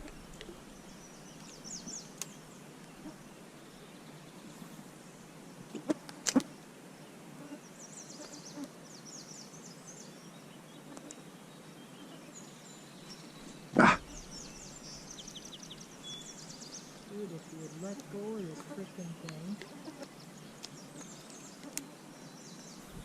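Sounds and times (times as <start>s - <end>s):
faint outdoor background: 0.0s - 23.0s
songbird chirping: 0.0s - 23.0s.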